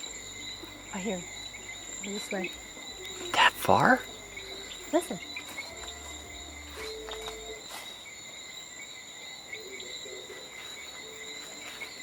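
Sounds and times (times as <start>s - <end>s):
crickets trilling: 0.0s - 12.0s.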